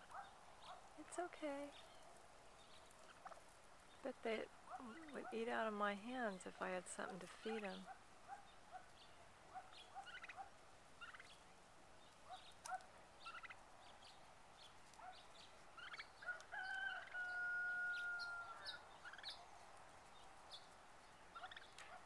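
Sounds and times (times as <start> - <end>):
turkeys clucking and yelping: 1.8 - 22.0.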